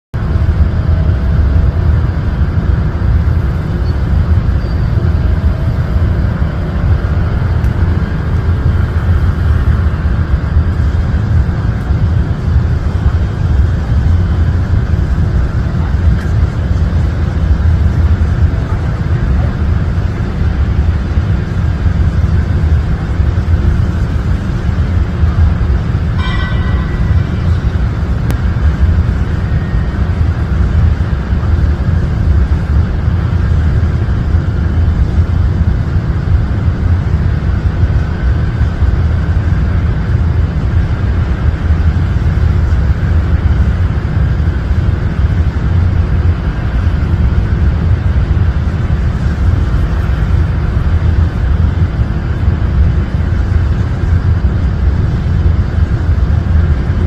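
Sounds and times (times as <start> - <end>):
loud low rumble: 0.1 - 57.0
brief high-pitched sound: 26.2 - 28.2.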